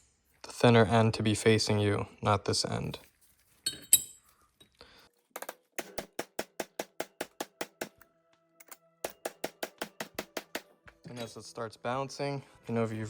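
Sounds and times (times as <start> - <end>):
hammer striking metal: 5.8 - 8.0, 9.0 - 11.3.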